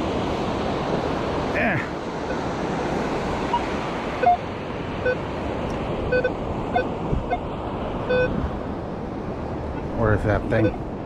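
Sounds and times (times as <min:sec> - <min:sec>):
wind: 0:00.0 - 0:11.0
metal detector beeps: 0:03.5 - 0:04.4, 0:06.1 - 0:07.4, 0:08.1 - 0:08.4.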